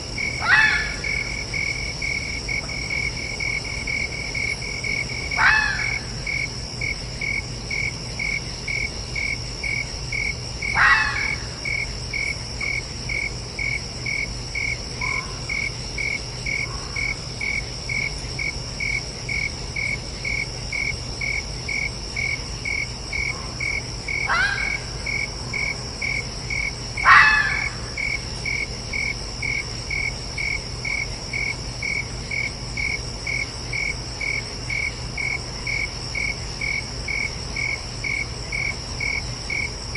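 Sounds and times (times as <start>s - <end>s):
constant high drone: 0.0s - 39.9s
night insects chirping: 0.0s - 39.9s
fox calling: 0.4s - 1.2s, 5.4s - 6.1s, 10.7s - 11.6s, 15.0s - 15.5s, 24.2s - 25.0s, 27.0s - 28.0s.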